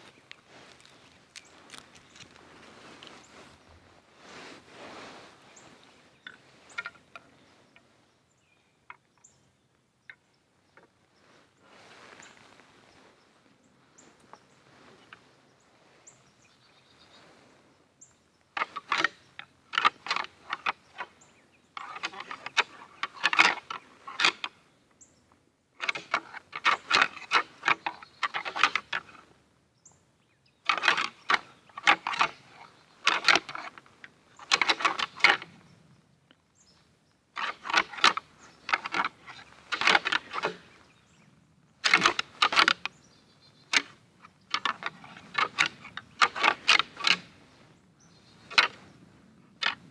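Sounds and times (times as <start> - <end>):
antlers clicking and clattering: 0.0 - 3.7, 4.4 - 7.9, 18.6 - 21.2, 21.8 - 24.5, 25.8 - 29.2, 30.7 - 35.6, 37.4 - 40.8, 41.8 - 42.9, 43.6 - 47.7, 48.4 - 48.9, 49.6 - 49.9.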